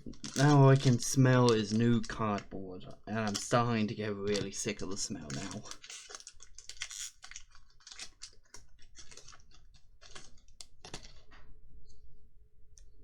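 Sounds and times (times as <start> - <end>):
trading cards being flicked: 4.3 - 5.7.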